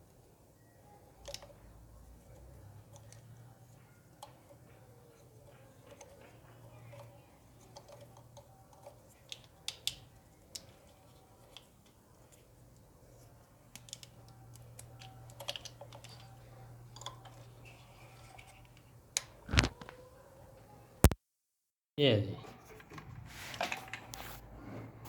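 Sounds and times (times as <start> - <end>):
small plastic clicks and taps: 1.2 - 12.5, 13.7 - 20.0.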